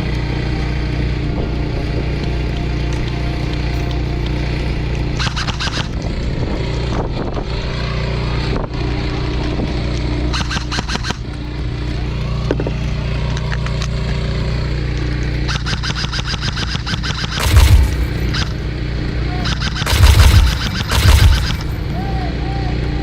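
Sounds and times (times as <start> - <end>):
airsoft gun full-auto bursts: 5.2 - 6.0, 10.3 - 11.2, 15.5 - 18.6, 19.4 - 22.0
low rumble: 17.4 - 23.0.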